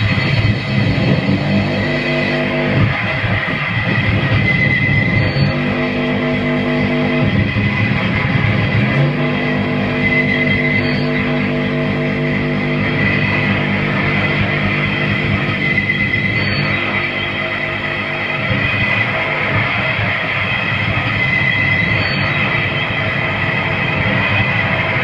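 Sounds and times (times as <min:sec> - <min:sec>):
low drone: 0:00.0 - 0:25.0
wall of distorted noise: 0:00.0 - 0:25.0
thin high tone: 0:08.8 - 0:24.6.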